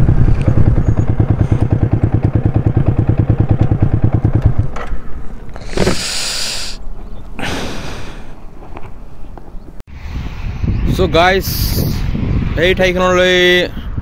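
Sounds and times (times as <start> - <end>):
motorcycle engine idling: 0.0 - 5.1.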